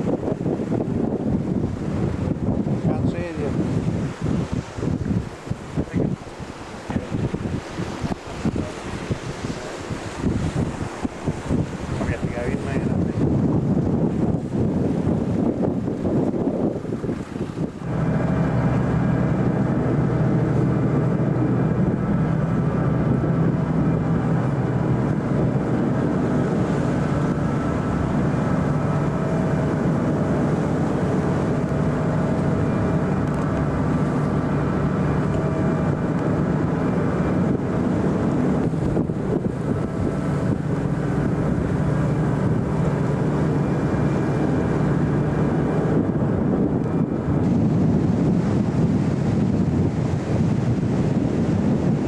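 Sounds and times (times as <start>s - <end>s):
vehicle engine running steadily: 17.6s - 52.0s.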